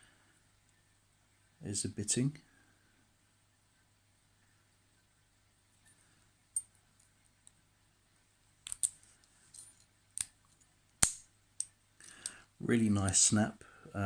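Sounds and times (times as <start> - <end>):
padlock shackle snapping open: 8.6 - 9.0, 10.2 - 10.4, 11.0 - 12.4
small metallic padlock clicks: 8.6 - 9.0, 9.6 - 12.4.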